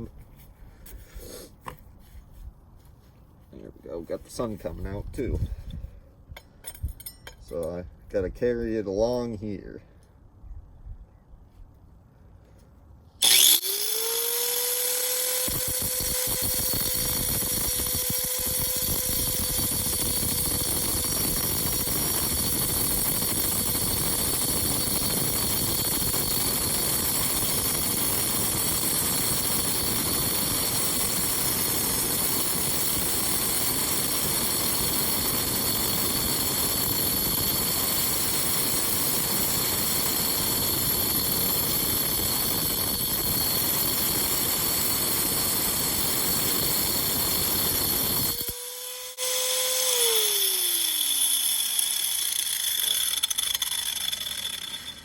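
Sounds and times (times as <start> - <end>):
angle grinder whine: 13.2 - 55.0
cutting disc grinding rock: 13.2 - 55.0.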